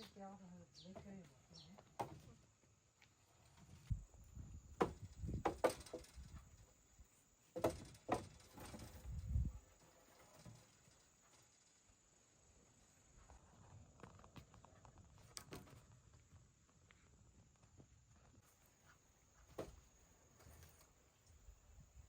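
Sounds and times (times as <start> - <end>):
wooden knocks: 4.8 - 6.1, 7.6 - 8.8
low thuds of poles put down: 4.8 - 6.4, 7.6 - 9.5.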